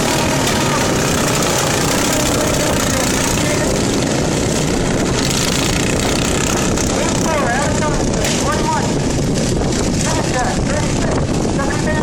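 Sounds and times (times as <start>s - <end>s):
lawn mower engine running: 0.0s - 12.0s.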